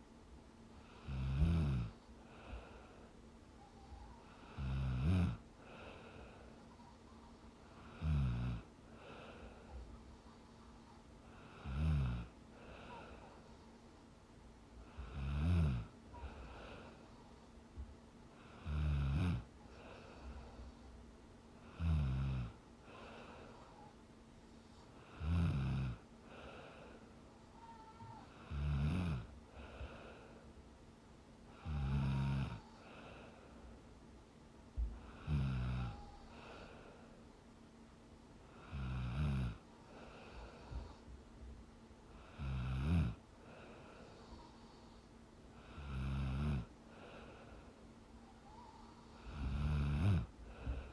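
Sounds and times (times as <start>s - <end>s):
faint breaths: 0.0s - 50.9s
woman snoring: 0.9s - 2.0s, 4.0s - 6.0s, 7.8s - 9.4s, 11.4s - 13.3s, 14.9s - 16.8s, 18.5s - 19.9s, 21.7s - 23.4s, 25.1s - 26.8s, 27.6s - 29.9s, 31.5s - 33.3s, 35.0s - 36.7s, 38.6s - 41.0s, 42.2s - 43.2s, 45.6s - 46.7s, 48.4s - 50.9s.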